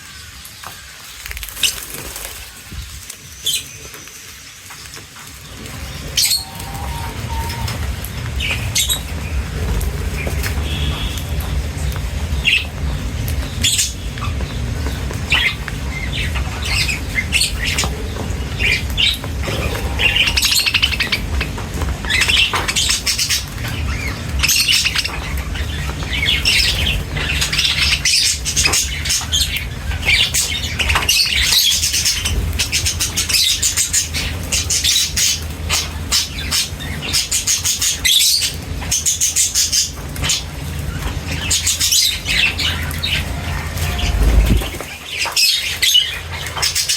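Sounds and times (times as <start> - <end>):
small birds chirping: 0.0 - 46.9
steady low rumble: 5.4 - 37.7, 40.2 - 45.0.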